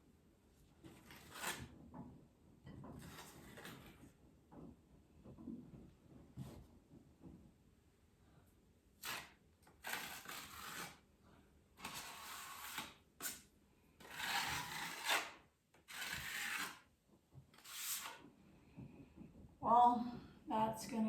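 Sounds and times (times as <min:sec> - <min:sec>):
knife scraping filler on wall: 0:00.8 - 0:02.0, 0:02.7 - 0:04.1, 0:09.0 - 0:11.1, 0:11.8 - 0:16.9, 0:17.5 - 0:18.3.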